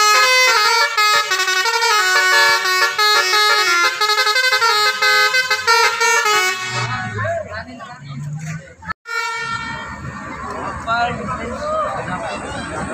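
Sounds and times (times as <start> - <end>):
bus musical horn melody: 0.0 - 7.2, 9.0 - 10.0.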